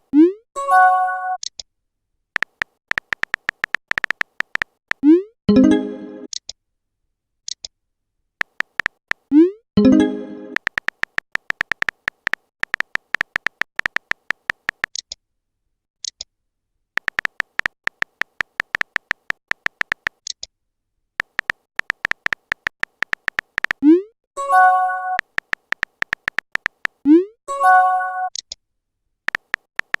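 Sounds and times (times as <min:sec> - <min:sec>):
typing clicks: 0:02.4 - 0:05.2, 0:08.4 - 0:09.4, 0:10.5 - 0:15.2, 0:17.0 - 0:20.5, 0:21.2 - 0:24.0, 0:24.6 - 0:27.0, 0:29.3 - 0:30.0.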